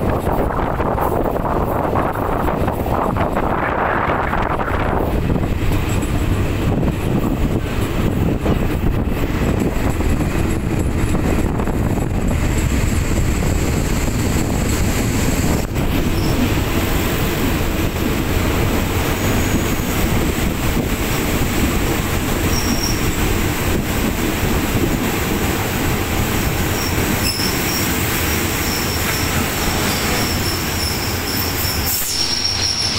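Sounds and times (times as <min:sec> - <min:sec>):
train wheels rumbling on rails: 0:00.0 - 0:32.9
faint high wheel squeal: 0:16.1 - 0:16.5, 0:22.4 - 0:23.2, 0:26.7 - 0:32.9.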